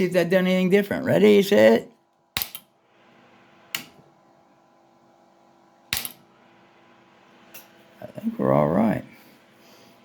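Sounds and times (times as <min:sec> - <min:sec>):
faint electrical hum: 0:00.0 - 0:10.0
equipment switch clicks: 0:02.4 - 0:02.7, 0:03.7 - 0:04.0, 0:05.9 - 0:06.2.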